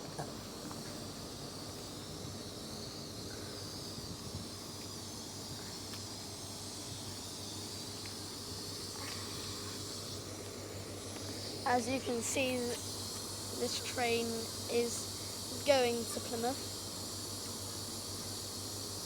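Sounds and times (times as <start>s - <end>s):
diesel locomotive idling: 10.2s - 16.6s.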